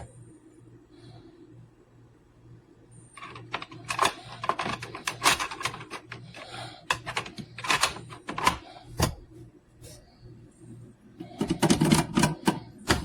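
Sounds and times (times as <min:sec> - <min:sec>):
faint low hum: 0:00.0 - 0:13.0
hard objects clicking and knocking: 0:03.2 - 0:09.1.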